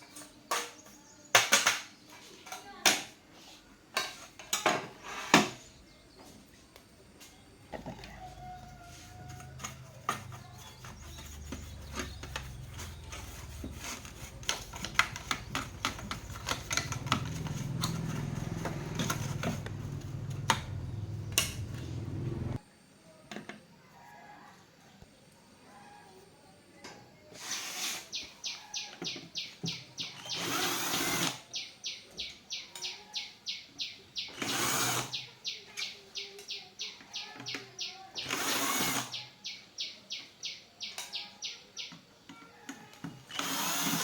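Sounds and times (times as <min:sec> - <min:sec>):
small clicks and taps: 0:14.3 - 0:21.8.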